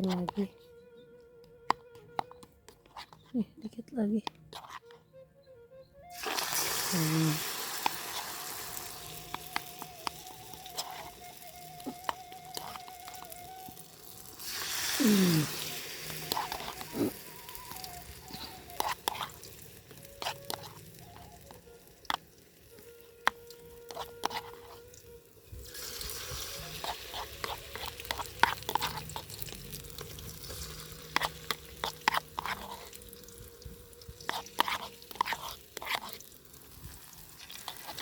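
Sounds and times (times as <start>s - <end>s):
sharp clicks and taps: 1.4s - 3.3s
crackers frying in hot oil: 6.1s - 38.0s.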